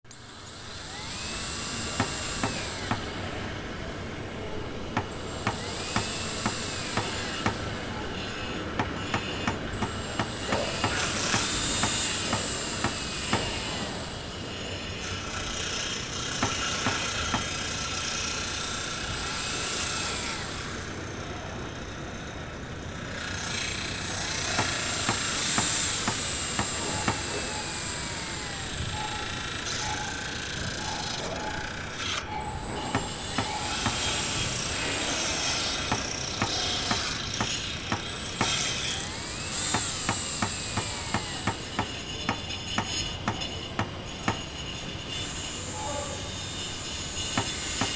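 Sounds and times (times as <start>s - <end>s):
power saw whining: 0.1s - 47.9s
power tools din: 0.1s - 47.9s
hammer blows: 0.9s - 3.2s, 5.0s - 14.3s, 16.4s - 17.9s, 24.2s - 47.9s.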